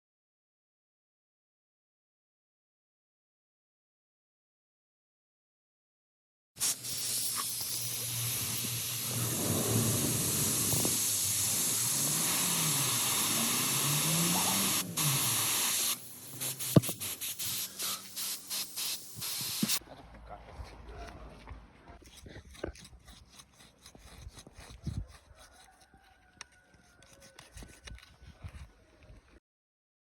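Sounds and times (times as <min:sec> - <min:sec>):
pressurized air hissing: 0:06.6 - 0:19.8.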